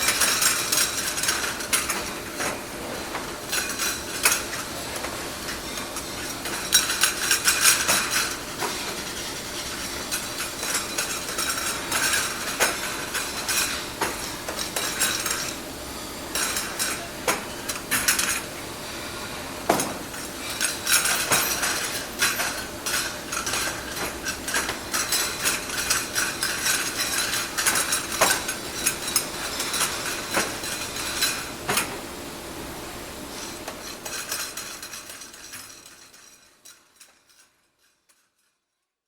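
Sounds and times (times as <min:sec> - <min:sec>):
china clinking together: 0:20.2 - 0:31.5.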